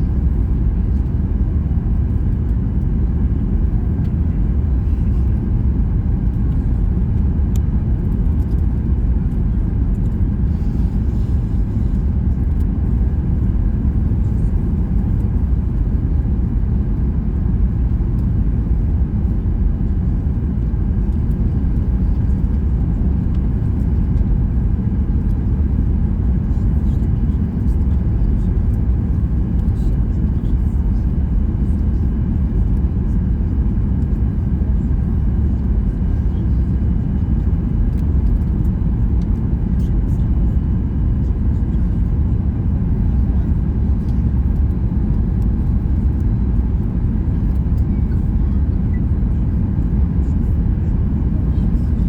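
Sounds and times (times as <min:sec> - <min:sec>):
airliner cabin engine rumble: 0:00.0 - 0:52.0.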